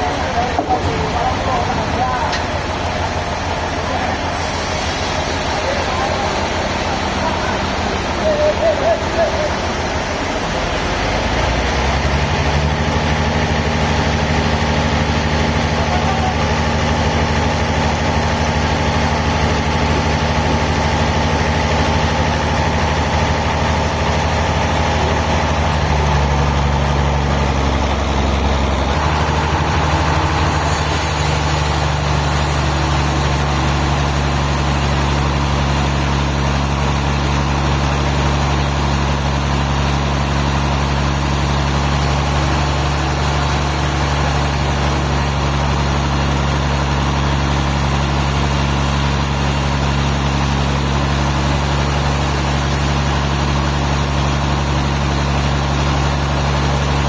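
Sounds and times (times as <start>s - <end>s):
heavy engine running: 0.0s - 57.0s.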